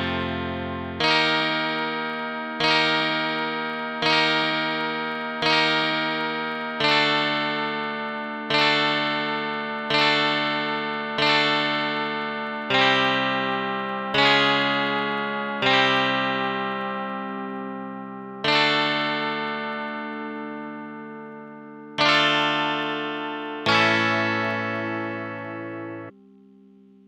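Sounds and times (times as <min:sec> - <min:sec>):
chords ringing out: 0:00.0 - 0:27.0.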